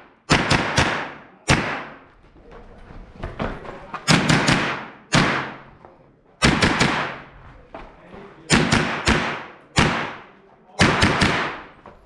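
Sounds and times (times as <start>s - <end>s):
gunshots with long echo: 0.0s - 2.0s, 4.0s - 5.7s, 6.4s - 7.3s, 8.5s - 11.8s.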